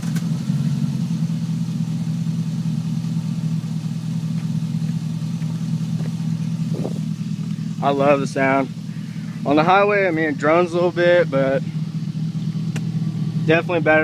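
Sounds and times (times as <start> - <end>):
deep engine exhaust rumble: 0.0 - 14.0.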